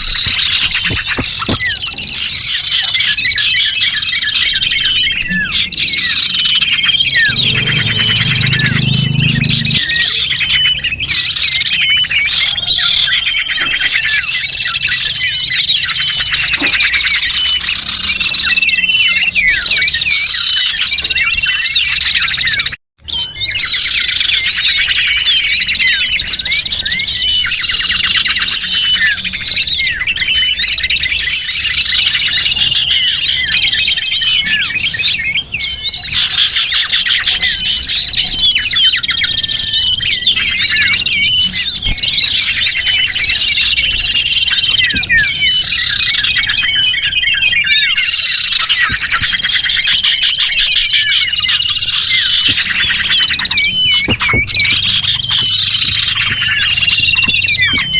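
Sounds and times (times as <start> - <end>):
small birds chirping and twittering: 0.0 - 57.9.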